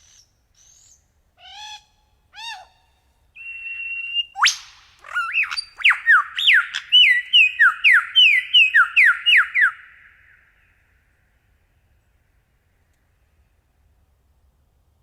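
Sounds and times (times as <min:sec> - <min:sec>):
bird whistling song: 0:00.0 - 0:02.8, 0:03.4 - 0:10.8.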